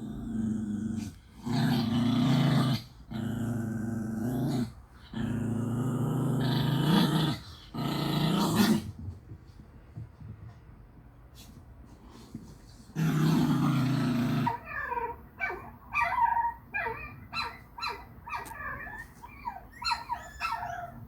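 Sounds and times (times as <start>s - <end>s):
dog growling: 0.0s - 8.9s, 13.0s - 15.6s.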